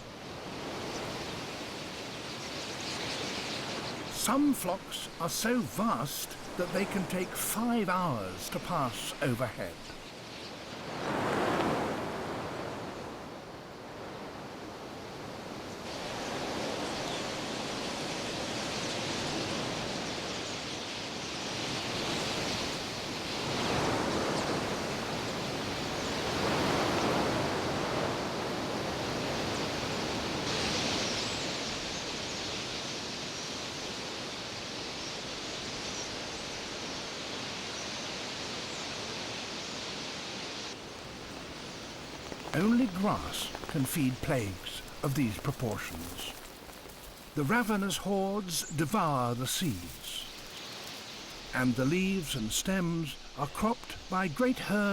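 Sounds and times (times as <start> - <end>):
flock of birds wingbeats roaring: 40.9 - 51.5.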